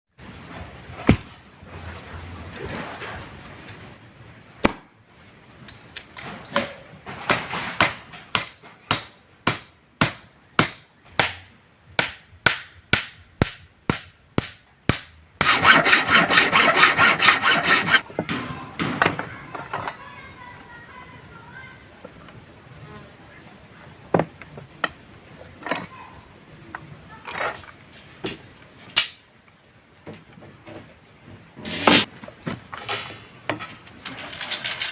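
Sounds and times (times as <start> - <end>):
hammer striking wood: 6.6 - 11.4, 12.0 - 19.2
dense rasping noise: 15.4 - 18.0.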